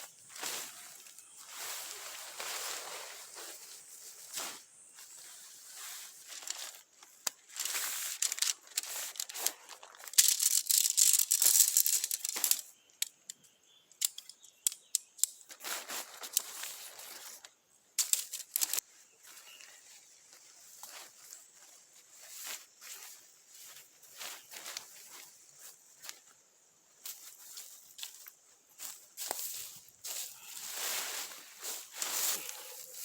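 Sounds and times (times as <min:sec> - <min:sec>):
material rustling and crinkling: 0:00.0 - 0:12.7, 0:15.5 - 0:26.3, 0:27.0 - 0:33.0
sharp clicks and snaps: 0:10.1 - 0:15.5.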